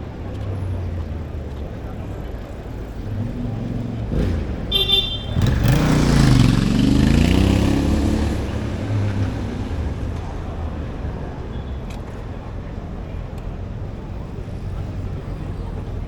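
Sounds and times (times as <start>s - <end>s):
street traffic: 0.0s - 16.0s
vehicle engine passing close: 2.9s - 11.3s
short horn toot: 4.7s - 5.8s.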